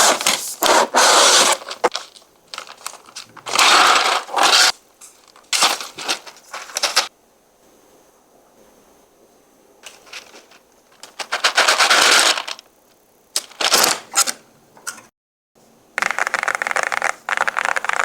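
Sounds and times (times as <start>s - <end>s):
keycaps clattering and rustling: 1.9s - 4.2s, 5.1s - 7.1s, 9.8s - 12.6s.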